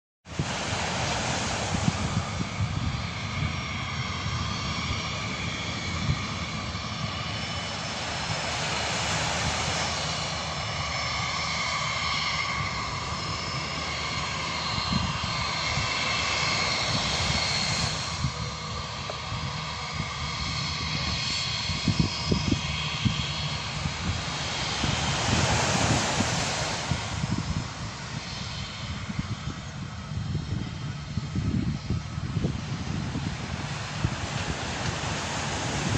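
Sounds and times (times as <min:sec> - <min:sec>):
jet engines roaring overhead: 0:00.2 - 0:35.9.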